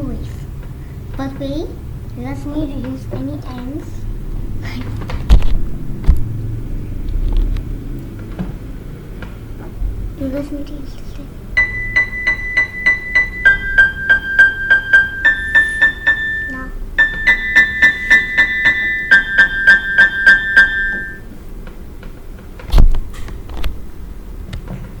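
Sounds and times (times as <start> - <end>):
electronic keyboard repeated notes: 11.6 - 21.3.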